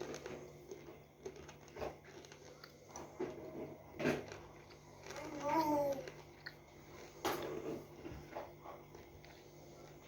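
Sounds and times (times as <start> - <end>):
close chewing: 0.0 - 10.0
soft crunchy bites: 0.0 - 10.0.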